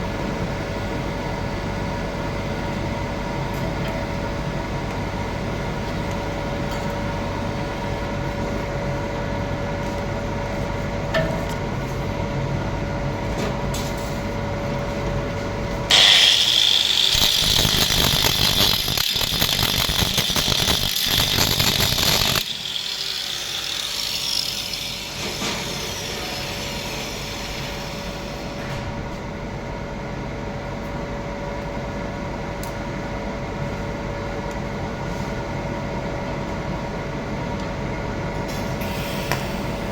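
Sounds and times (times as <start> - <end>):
steady electrical hum: 0.0 - 38.4
welding arc crackling and hissing: 15.9 - 28.4.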